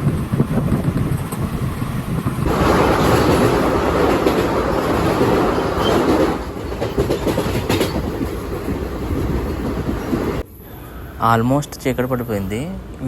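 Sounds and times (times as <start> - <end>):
train wheels clickety-clack: 0.0 - 10.4
train rumble: 0.0 - 13.0.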